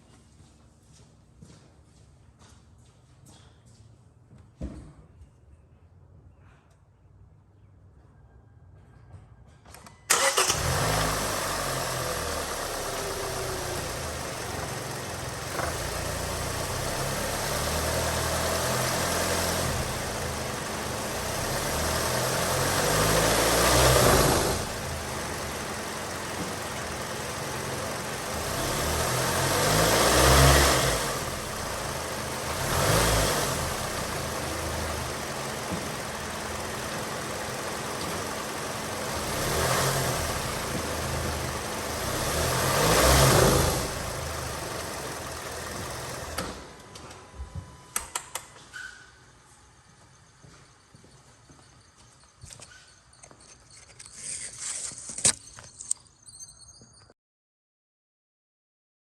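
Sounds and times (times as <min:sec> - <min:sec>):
car engine starting and idling: 0:09.7 - 0:50.4.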